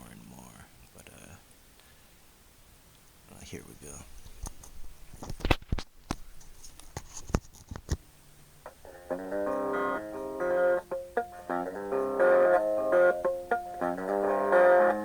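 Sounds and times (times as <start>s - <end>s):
lap guitar riff: 8.6s - 15.0s.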